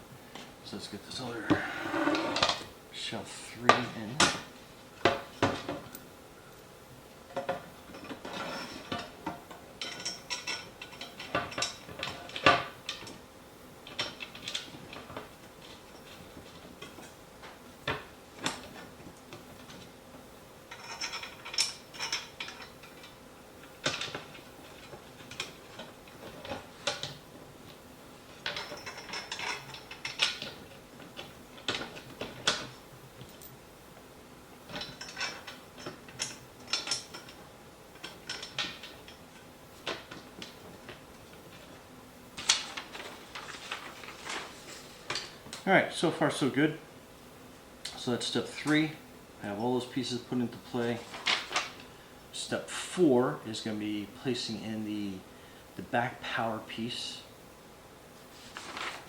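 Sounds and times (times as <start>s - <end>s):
metallic clicks and rattles: 34.7s - 37.4s.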